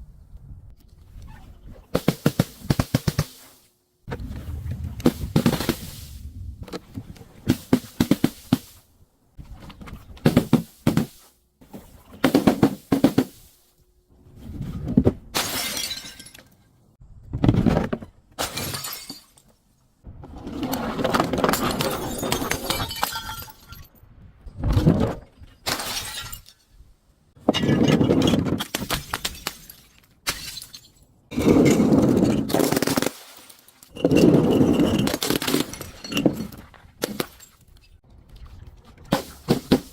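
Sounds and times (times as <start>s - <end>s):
glass bottles breaking: 15.4s - 16.5s, 18.4s - 19.4s, 21.5s - 23.9s, 25.6s - 26.7s, 28.6s - 37.6s.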